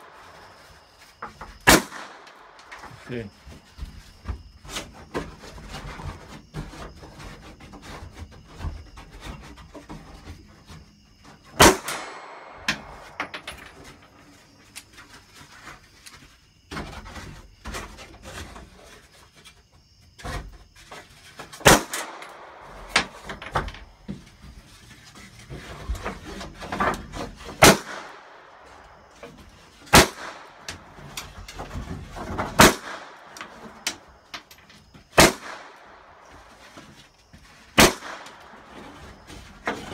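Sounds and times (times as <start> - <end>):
loud gunshots: 1.6 - 2.3, 11.6 - 13.2, 21.6 - 23.1, 27.6 - 28.2, 29.9 - 30.6, 32.6 - 33.2, 35.2 - 35.8, 37.8 - 38.3.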